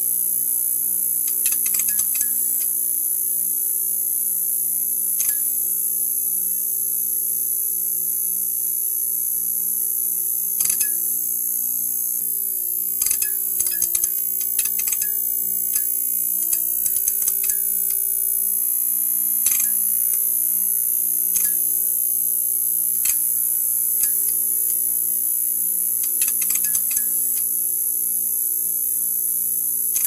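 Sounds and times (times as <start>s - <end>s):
neon sign buzzing: 8.8s - 30.0s.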